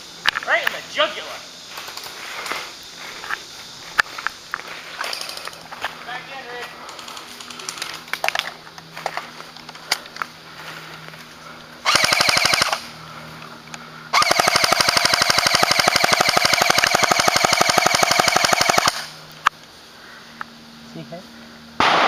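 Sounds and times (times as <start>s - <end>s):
airsoft rifle firing bursts: 11.8s - 12.9s, 14.2s - 19.2s.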